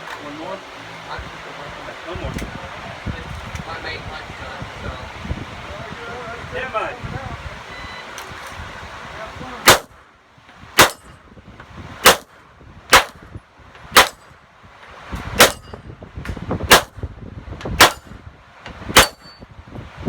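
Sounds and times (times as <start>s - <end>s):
pistol shots: 9.7s - 10.0s, 10.8s - 11.2s, 12.0s - 13.3s, 14.0s - 14.3s, 15.4s - 15.7s, 16.7s - 17.0s, 17.8s - 18.1s, 19.0s - 19.3s
steel targets clanging: 10.8s - 11.3s, 13.9s - 14.4s, 15.4s - 15.9s, 17.8s - 18.2s, 18.9s - 19.5s.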